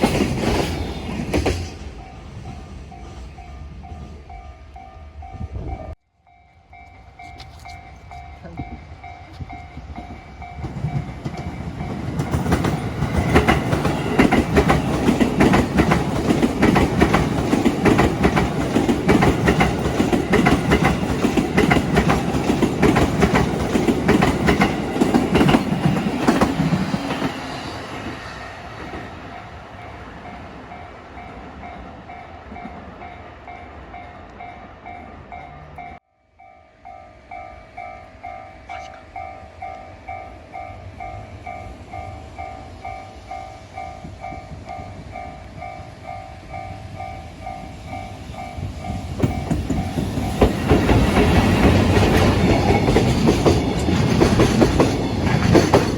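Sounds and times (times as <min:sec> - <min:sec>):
train wheels clicking on rails: 0:00.0 - 0:04.0, 0:06.9 - 0:33.1, 0:39.6 - 0:55.9
crossing warning bell: 0:01.8 - 0:55.9.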